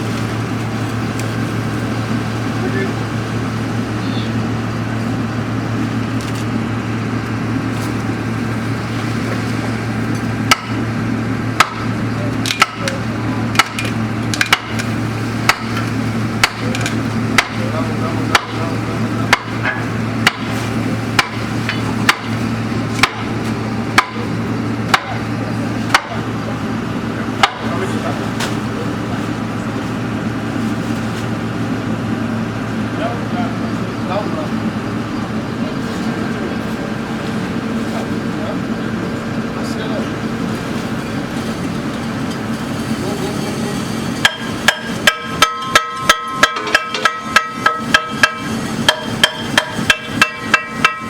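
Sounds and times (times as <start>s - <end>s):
engine running: 0.0s - 51.0s
hammer blows: 44.2s - 51.0s.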